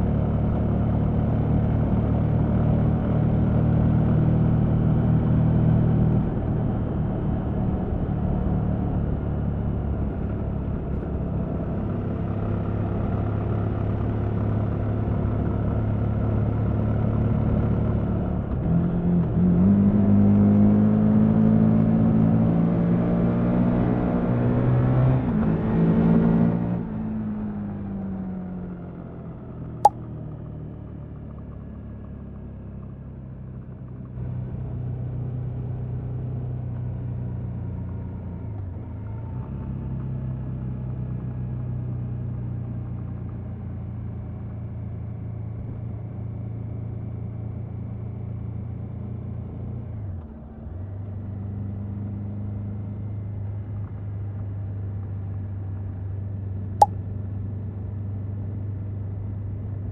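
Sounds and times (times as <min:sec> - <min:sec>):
motorcycle engine running at low revs: 0:00.0 - 0:59.9.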